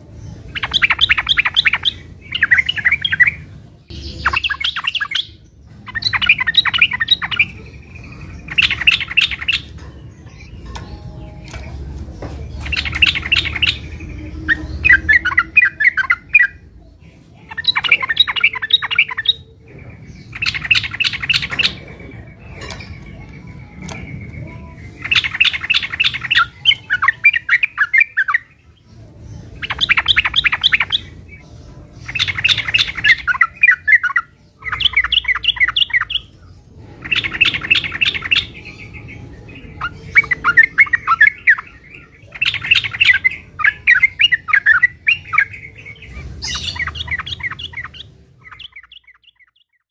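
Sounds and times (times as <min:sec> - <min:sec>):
bird chattering song: 0:00.0 - 0:49.9.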